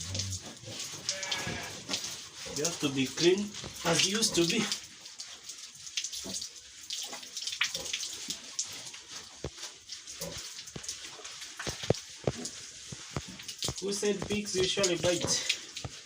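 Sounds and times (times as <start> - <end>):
water splashing: 0.0 - 16.0
water hissing: 9.4 - 16.0.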